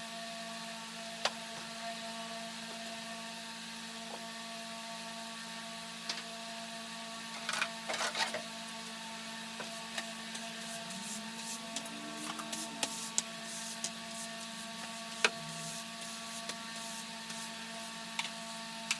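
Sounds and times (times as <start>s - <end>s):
machine hum: 9.6s - 17.9s.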